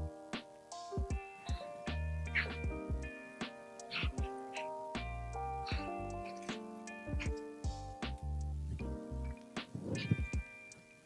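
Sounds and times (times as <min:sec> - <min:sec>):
synth and bass music with beat: 0:01.9 - 0:04.4, 0:05.0 - 0:09.0.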